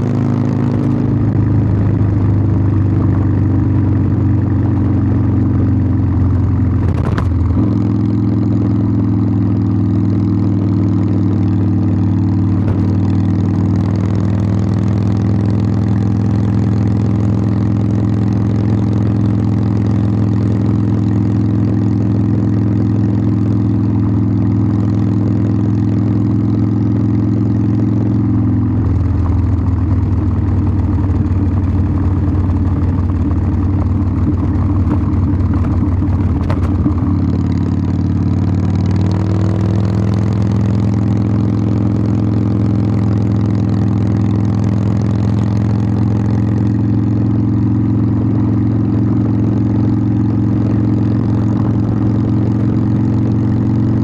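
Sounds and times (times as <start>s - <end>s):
motorcycle exhaust running: 0.0s - 54.0s.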